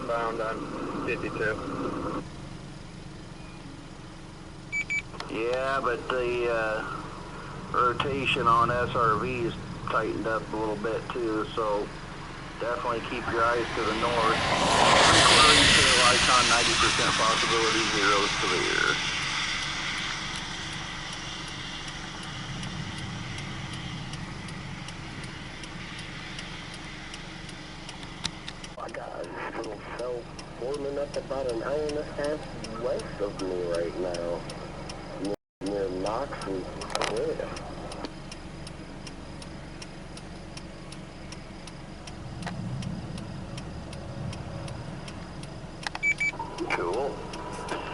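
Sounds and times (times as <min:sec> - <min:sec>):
car road and engine noise: 0:00.0 - 0:47.9
faint high ticks: 0:04.9 - 0:05.8, 0:19.4 - 0:47.9.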